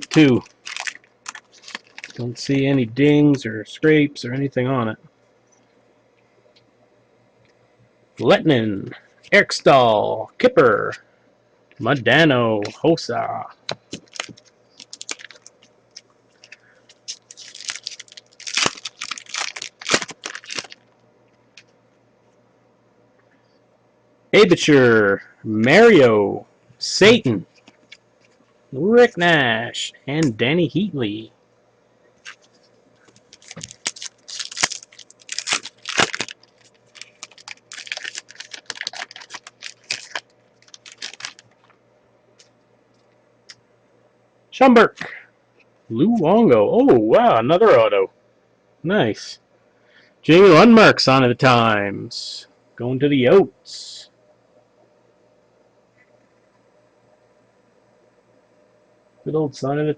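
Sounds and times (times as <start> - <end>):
foil wrapper tearing and crinkling: 0.0 - 2.4, 13.9 - 15.6, 16.4 - 20.8, 33.2 - 41.7.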